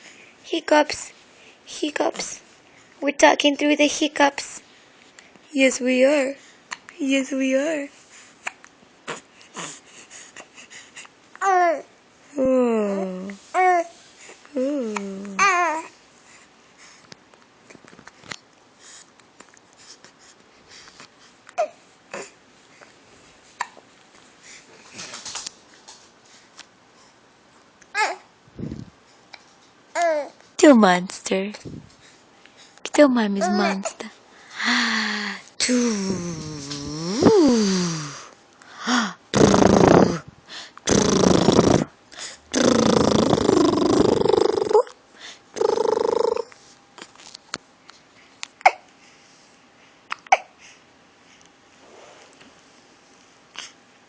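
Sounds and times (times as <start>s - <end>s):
small breathy sounds: 33.7s - 41.0s, 41.6s - 46.6s.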